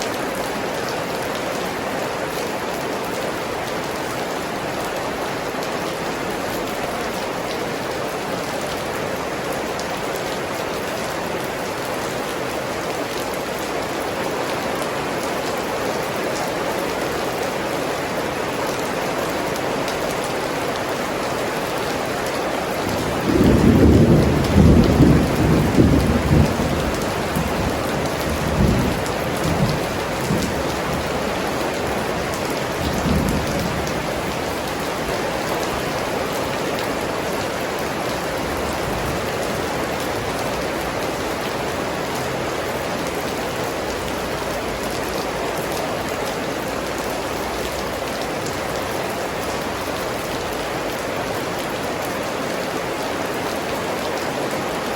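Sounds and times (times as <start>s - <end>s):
steady rain falling: 0.0s - 54.9s
rumble of thunder: 23.0s - 34.8s.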